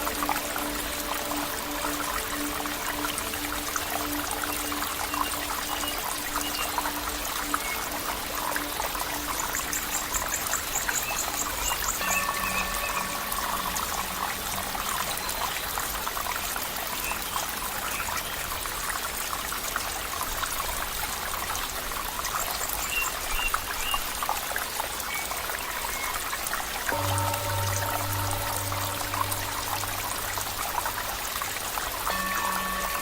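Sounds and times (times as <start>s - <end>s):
water trickling and splashing: 0.0s - 33.0s.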